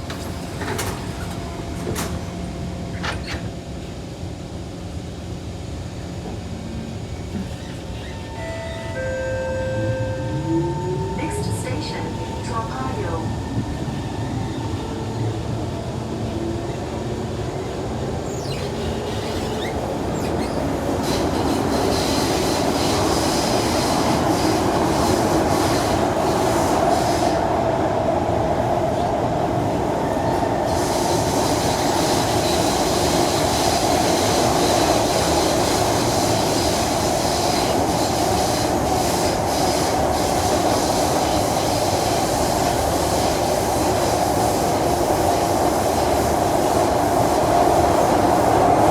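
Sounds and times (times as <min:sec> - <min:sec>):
train wheel and track noise: 0:00.0 - 0:48.9
rising whine: 0:08.4 - 0:13.8
wheel squeal: 0:18.3 - 0:21.2.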